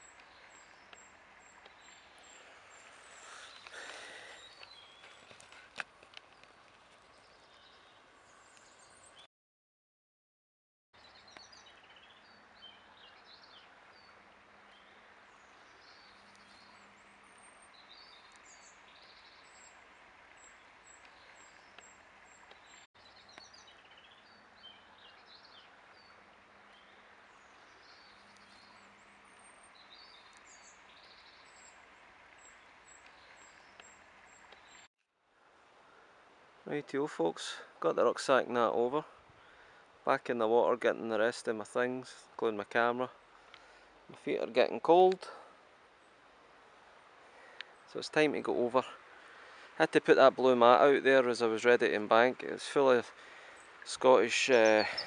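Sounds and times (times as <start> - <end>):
birds chirping and calling: 0.0 - 9.2, 20.4 - 31.8, 52.3 - 55.0
steady background hiss: 11.4 - 55.0.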